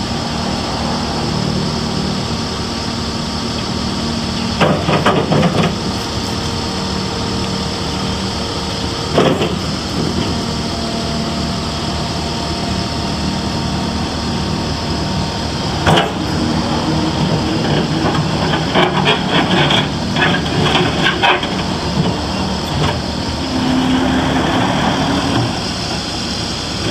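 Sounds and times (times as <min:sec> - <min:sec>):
skid steer diesel engine running: 0:00.0 - 0:26.9
machine knocks and clanks: 0:04.6 - 0:05.8.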